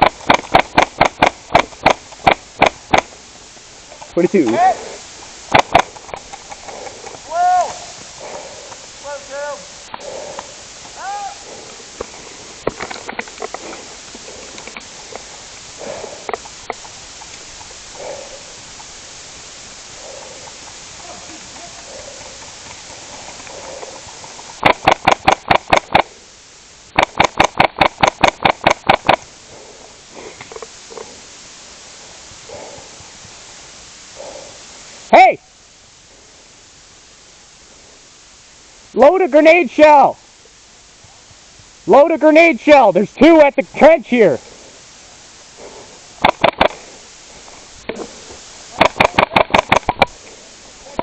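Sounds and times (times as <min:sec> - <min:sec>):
airsoft rifle shots: 0:00.0 - 0:03.2, 0:05.5 - 0:06.2, 0:24.6 - 0:26.1, 0:27.0 - 0:29.2, 0:46.2 - 0:46.9, 0:48.7 - 0:50.2.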